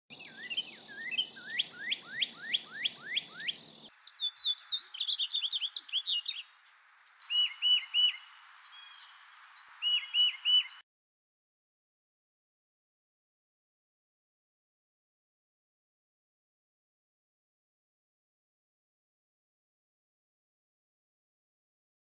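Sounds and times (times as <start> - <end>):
whistled bird notes: 0.1 - 6.6, 7.2 - 10.8
small birds chirping: 0.1 - 10.8.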